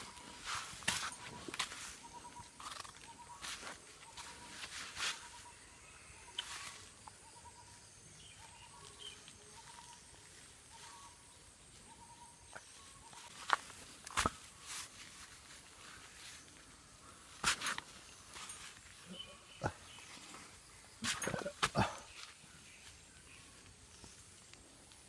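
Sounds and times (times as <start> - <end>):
sharp rustles or steps: 0.0 - 5.5, 17.4 - 19.1.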